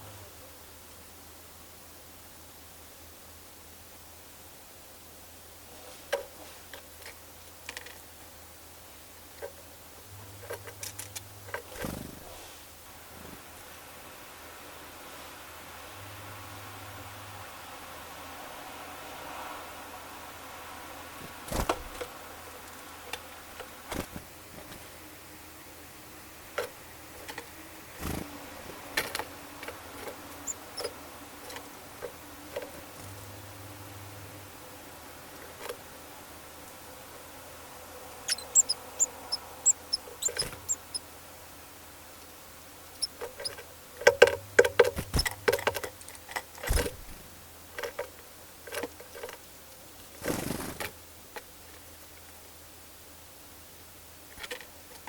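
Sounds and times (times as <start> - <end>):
rustle: 0.0 - 55.0
high bird peeps: 29.9 - 31.0, 38.2 - 41.1
birds pecking taps: 38.2 - 41.0, 42.9 - 47.2.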